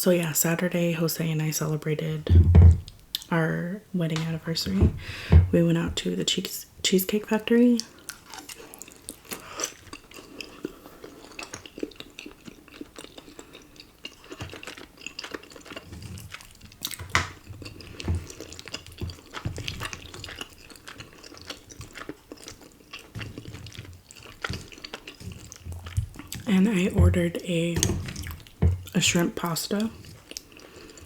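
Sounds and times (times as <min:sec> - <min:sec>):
wet mouth chewing noodles: 0:07.9 - 0:26.5, 0:29.9 - 0:31.0.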